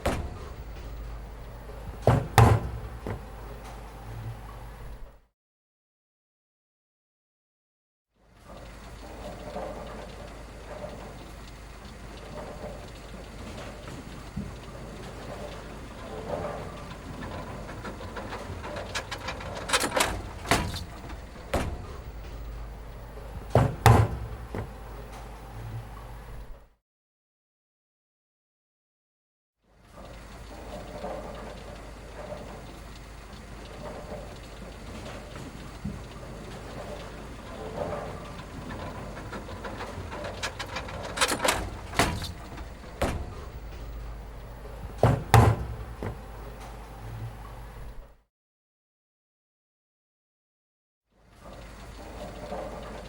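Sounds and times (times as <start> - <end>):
sharp knocks: 0.0 - 3.4, 19.0 - 24.9, 40.5 - 46.4
knocks and clatters: 0.0 - 4.0, 12.2 - 26.1, 33.7 - 48.0.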